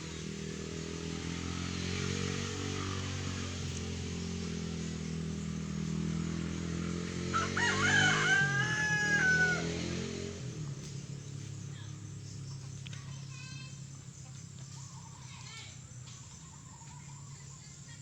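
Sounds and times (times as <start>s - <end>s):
engine droning: 0.0s - 18.0s
rooster crowing: 7.3s - 10.0s.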